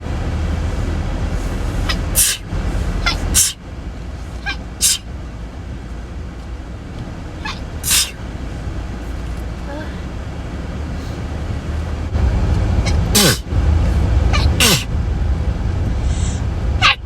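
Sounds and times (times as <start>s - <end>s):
steady low rumble: 0.0s - 17.0s
woman sneezing: 1.9s - 2.4s, 3.1s - 3.6s, 4.8s - 5.0s, 7.8s - 8.2s, 12.9s - 13.4s, 14.4s - 14.9s.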